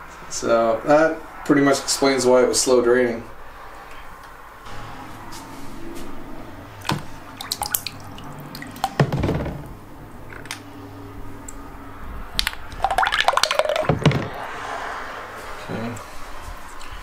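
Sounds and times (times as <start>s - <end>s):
water dripping in a sink: 6.8s - 9.2s, 12.4s - 14.2s
dull knock: 8.9s - 9.6s.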